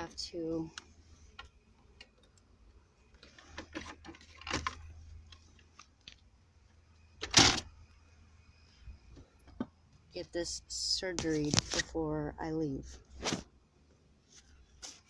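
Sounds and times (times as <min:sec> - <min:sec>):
wire handling clicks and rattles: 0:03.1 - 0:06.3.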